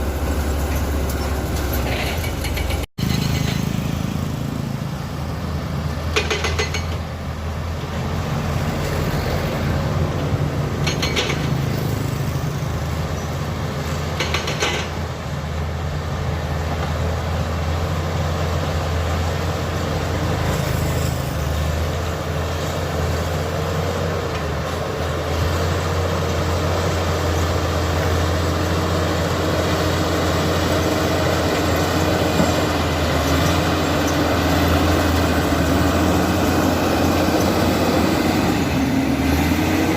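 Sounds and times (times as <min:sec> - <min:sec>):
bulldozer diesel engine droning: 0:00.0 - 0:39.9
metallic clanks: 0:00.6 - 0:03.9, 0:10.8 - 0:11.7.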